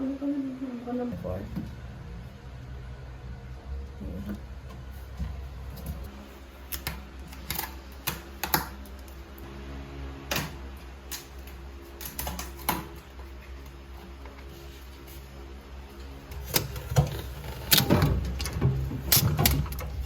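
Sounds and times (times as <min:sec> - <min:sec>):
low hum: 0:00.0 - 0:08.0, 0:08.8 - 0:20.0.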